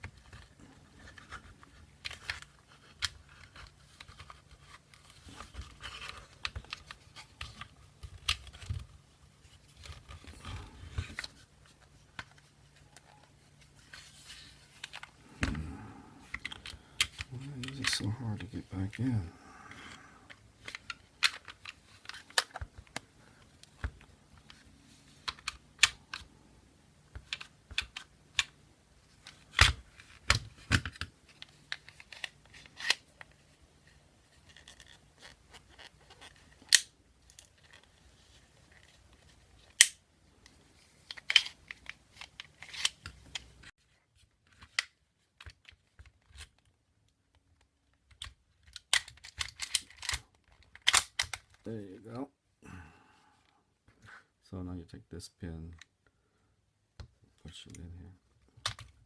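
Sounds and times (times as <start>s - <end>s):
clicks and knocks of small parts: 34.4s - 37.9s, 38.7s - 43.7s, 44.4s - 51.7s, 58.4s - 59.0s.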